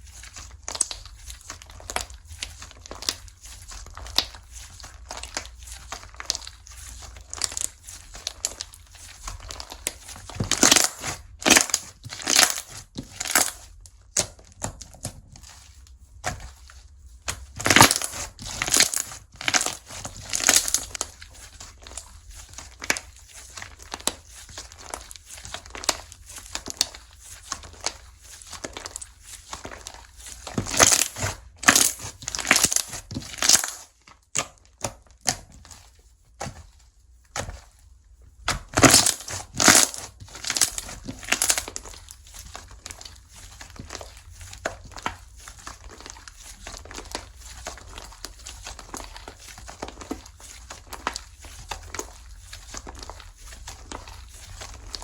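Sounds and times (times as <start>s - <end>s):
slime crackling and popping: 0.1s - 15.4s, 17.2s - 35.7s, 38.4s - 55.0s.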